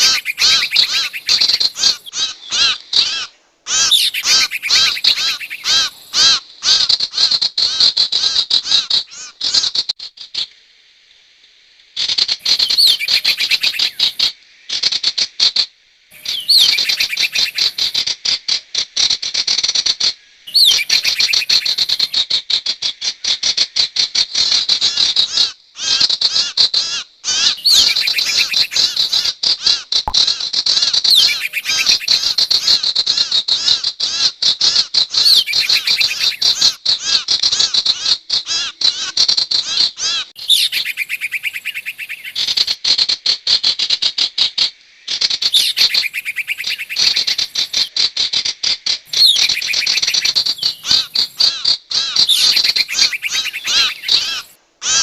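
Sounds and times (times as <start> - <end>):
bird chirping rapidly: 0.0 - 2.2, 3.7 - 6.2, 12.4 - 14.3, 16.2 - 18.0, 20.5 - 22.1, 27.6 - 29.3, 31.0 - 32.8, 35.2 - 36.8, 40.4 - 42.8, 45.4 - 47.9, 49.1 - 55.0.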